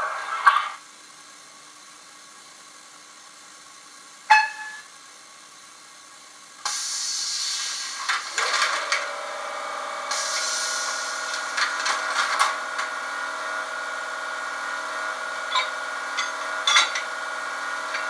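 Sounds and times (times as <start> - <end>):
model train running hum: 1.1 - 18.0
short pitched tone: 4.3 - 4.9
sudden hiss: 6.6 - 8.4, 10.1 - 11.8.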